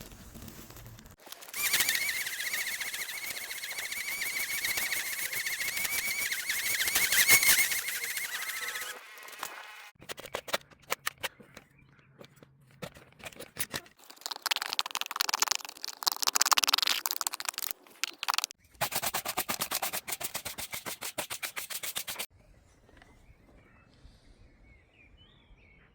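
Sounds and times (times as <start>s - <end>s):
grass trimmer cutting grass: 1.2s - 9.9s.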